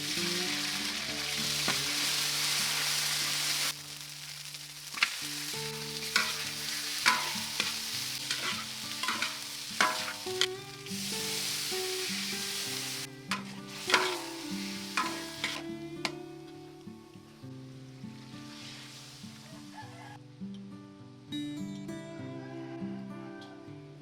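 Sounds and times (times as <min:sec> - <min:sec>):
food sizzling in a pan: 0:00.0 - 0:20.4
utensil clacking and scraping pan: 0:06.1 - 0:10.5, 0:13.3 - 0:14.4, 0:15.0 - 0:15.6.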